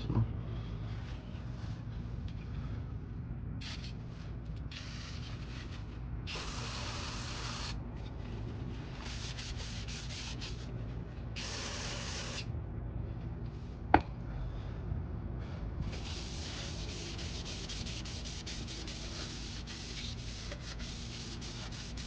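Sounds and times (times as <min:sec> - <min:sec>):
aerosol spray hissing: 0:06.3 - 0:07.8, 0:11.4 - 0:12.4, 0:16.0 - 0:22.0
rag rubbing on metal: 0:15.9 - 0:22.0.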